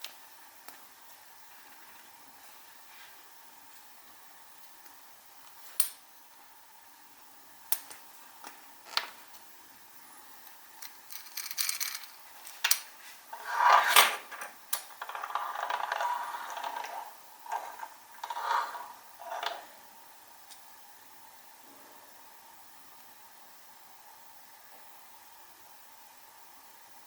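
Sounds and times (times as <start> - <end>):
plastic toy parts clicking: 10.8 - 12.1
plastic parts scraping and rustling: 10.8 - 12.7, 13.3 - 19.7.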